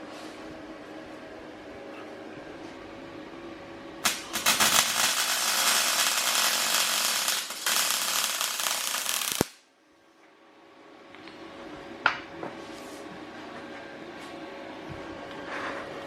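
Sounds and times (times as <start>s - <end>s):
welding arc crackling: 4.0s - 9.6s.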